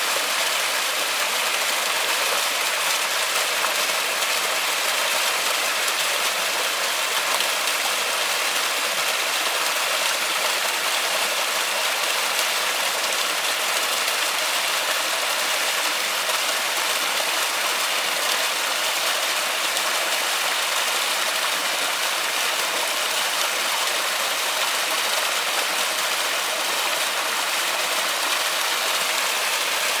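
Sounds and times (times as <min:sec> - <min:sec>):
waterfall rushing: 0:10.2 - 0:30.0.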